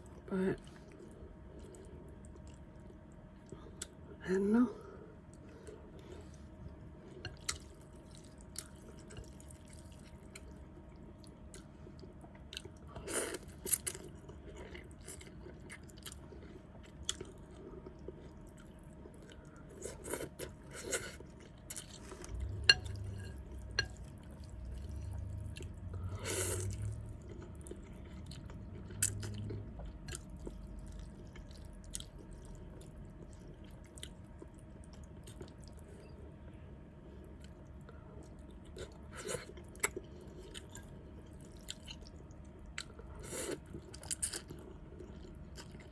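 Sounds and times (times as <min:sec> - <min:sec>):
wet chewing: 0:12.5 - 0:35.8.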